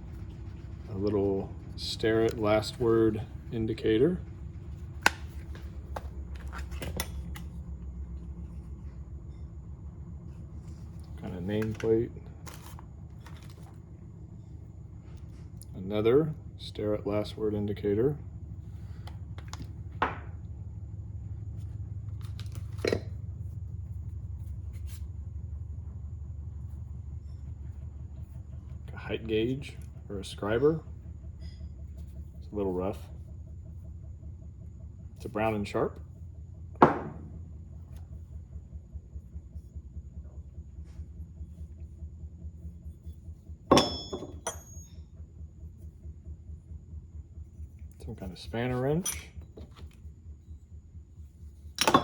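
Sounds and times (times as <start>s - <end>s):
steady low hum: 0.0s - 52.0s
loud knock: 36.8s - 37.3s
metal tools clicking and clinking: 43.7s - 45.0s, 49.0s - 49.4s, 51.8s - 52.0s.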